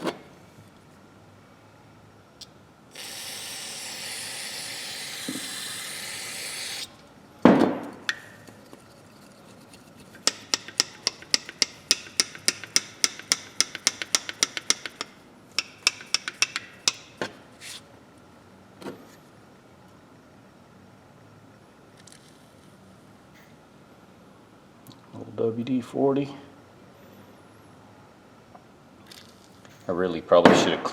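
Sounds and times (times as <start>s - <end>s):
aerosol spray can hissing: 2.9s - 6.9s.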